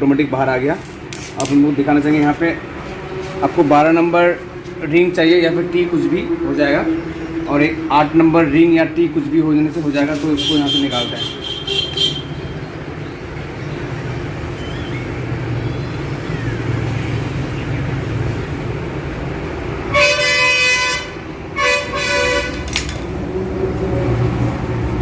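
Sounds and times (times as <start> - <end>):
traffic rumble: 0.0 - 25.0
vehicle horn honking: 10.3 - 12.6, 19.9 - 22.7.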